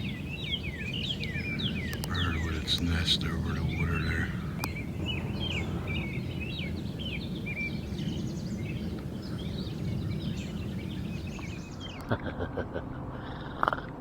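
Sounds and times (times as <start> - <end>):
birds chirping and trilling: 0.0 - 12.1
steady low rumble: 0.0 - 14.0.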